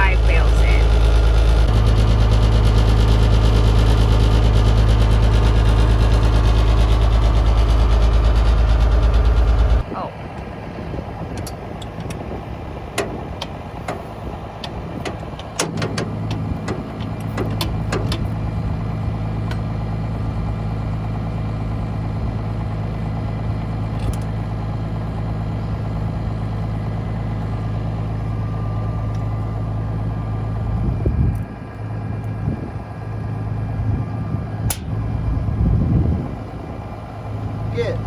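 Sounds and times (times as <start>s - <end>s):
tractor engine running: 0.0s - 38.0s
sharp clicks and knocks: 14.6s - 18.3s.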